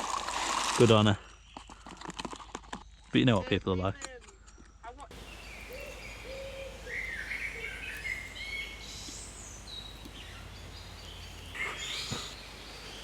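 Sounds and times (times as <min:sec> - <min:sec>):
birds singing and chirping: 0:04.4 - 0:13.0.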